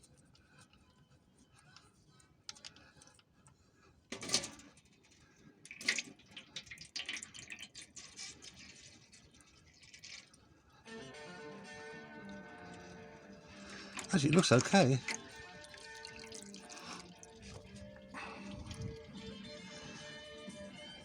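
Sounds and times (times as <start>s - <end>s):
oil splashing and dripping: 5.7s - 10.3s, 13.5s - 19.1s.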